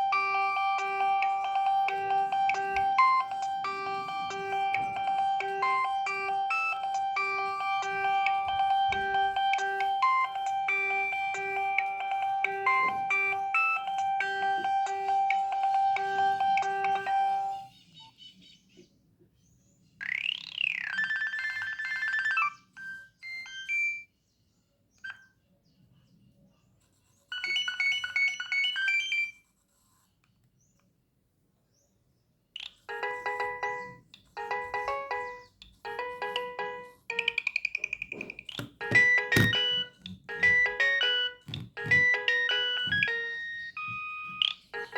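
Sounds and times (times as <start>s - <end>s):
phone ringtone tune: 0.0s - 17.7s, 20.0s - 24.1s, 27.3s - 29.4s, 32.9s - 44.9s
phone beeps: 20.0s - 24.1s, 37.1s - 44.9s.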